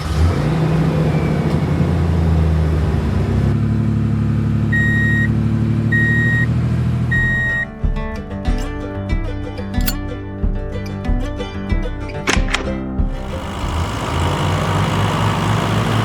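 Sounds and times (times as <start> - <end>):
reversing alarm beeping: 7.1 - 7.6
music: 7.5 - 13.9
truck engine running: 12.3 - 16.0.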